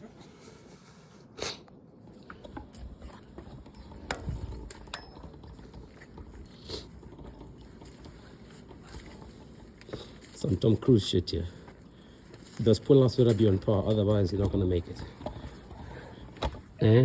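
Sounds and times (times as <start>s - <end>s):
scuffs on rocky ground: 5.7s - 17.0s.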